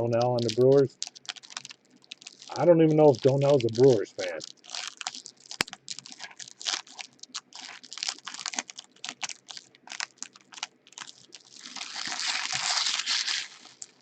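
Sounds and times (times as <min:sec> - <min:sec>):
cards rustling: 0:00.0 - 0:06.8, 0:11.6 - 0:14.0.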